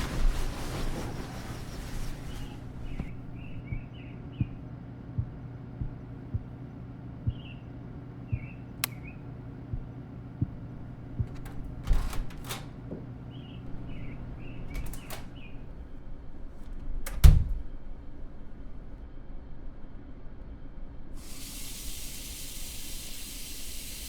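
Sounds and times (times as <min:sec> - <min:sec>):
low hum: 0:00.0 - 0:22.2.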